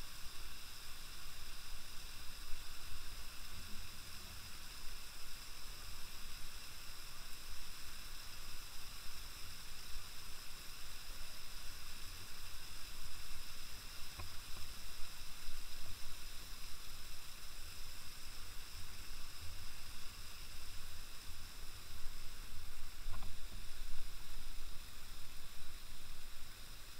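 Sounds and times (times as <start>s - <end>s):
waterfall rushing hiss: 0.0s - 26.9s.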